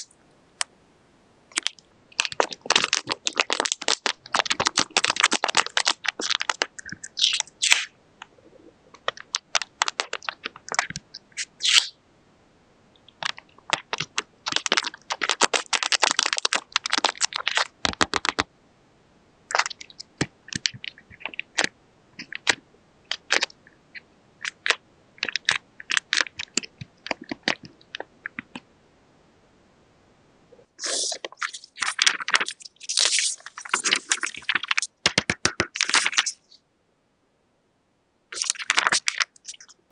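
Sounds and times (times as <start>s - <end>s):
paper crinkling and crackling: 1.6s - 7.8s, 9.0s - 11.5s, 13.2s - 18.5s, 30.8s - 36.4s, 38.4s - 39.7s.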